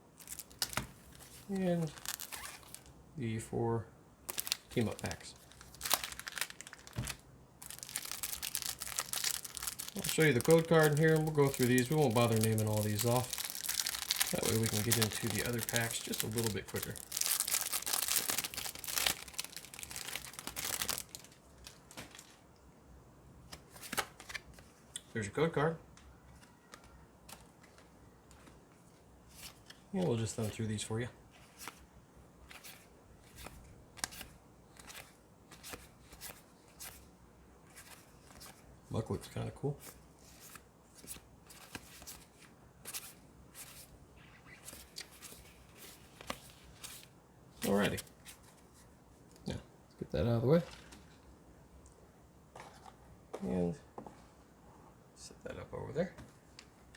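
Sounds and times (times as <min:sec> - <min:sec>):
foil wrapper tearing and crinkling: 0:00.2 - 0:00.8, 0:01.7 - 0:02.9, 0:04.3 - 0:22.4.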